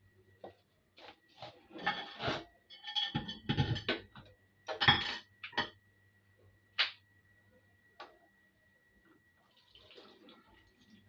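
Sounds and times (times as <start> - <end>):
dishes and utensils clattering: 1.7 - 5.8.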